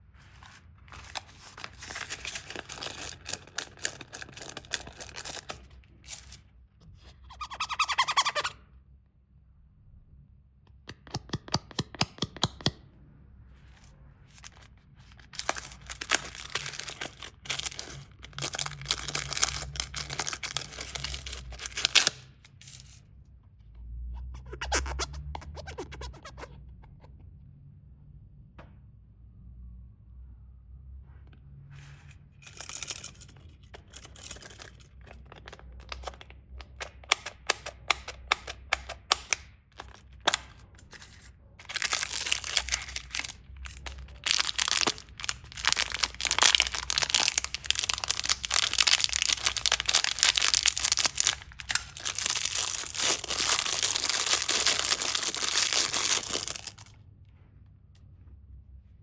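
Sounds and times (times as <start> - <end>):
plastic wrappers crinkling and tearing: 0.2 - 6.4, 14.3 - 23.0, 32.4 - 37.6, 38.2 - 56.9.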